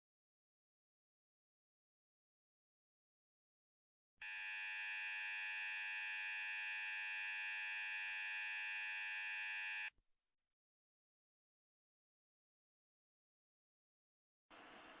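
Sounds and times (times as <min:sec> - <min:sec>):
buzzy electronic alarm tone: 0:04.2 - 0:09.9.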